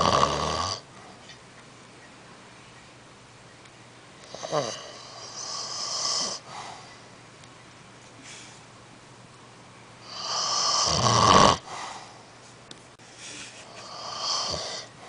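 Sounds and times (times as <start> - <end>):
man snoring: 0.0 - 0.8, 4.3 - 6.5, 10.0 - 11.7, 13.7 - 14.9.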